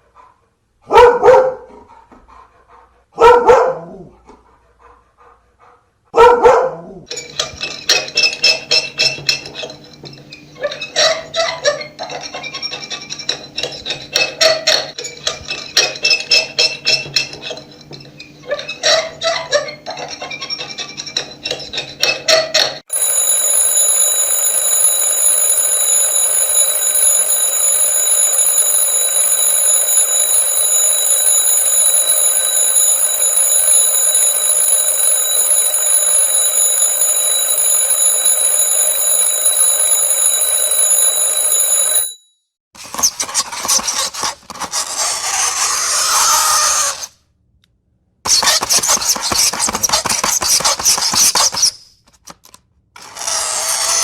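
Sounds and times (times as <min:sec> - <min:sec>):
shrill alarm tone: 0:22.9 - 0:42.2
alarm clock bell ringing: 0:22.9 - 0:42.3.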